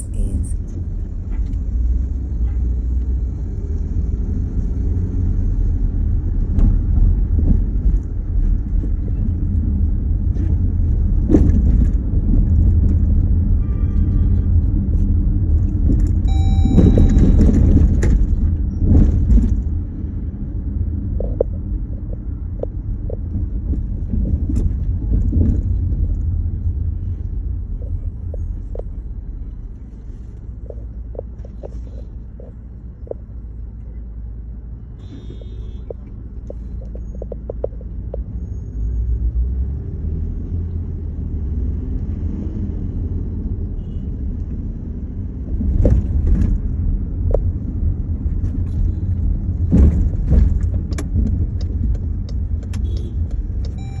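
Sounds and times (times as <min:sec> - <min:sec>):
steady low rumble: 0:00.0 - 0:02.3, 0:14.2 - 0:38.4, 0:44.7 - 0:54.0.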